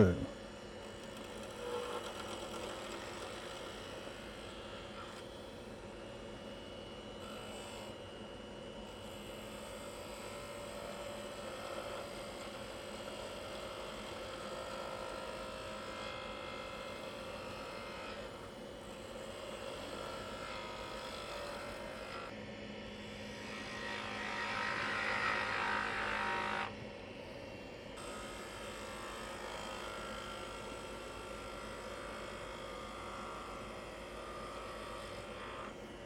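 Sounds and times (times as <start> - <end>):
wood lathe running: 1.0 - 5.2, 9.9 - 18.1, 24.3 - 26.7, 28.0 - 35.7.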